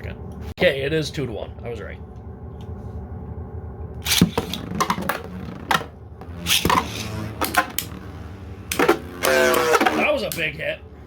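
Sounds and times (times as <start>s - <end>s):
steady low whir: 0.0s - 11.0s.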